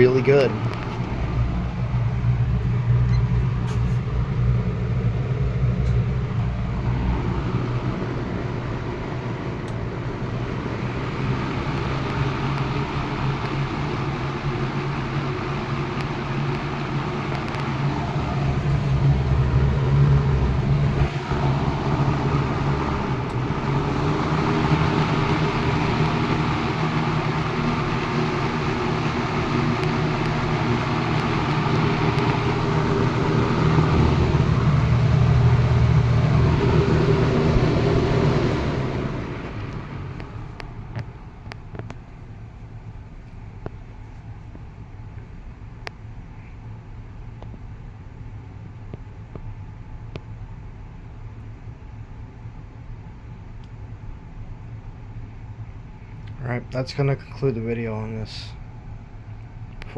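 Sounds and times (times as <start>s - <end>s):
rush of air from fan blades: 0.0s - 45.2s
box fan motor hum: 0.0s - 59.9s.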